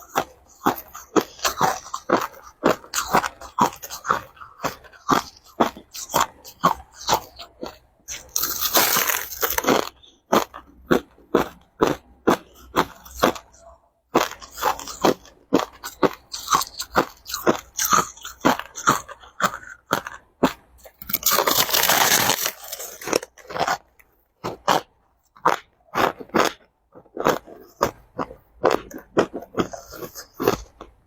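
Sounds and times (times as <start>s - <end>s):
person chewing crushed ice: 0.0s - 31.0s.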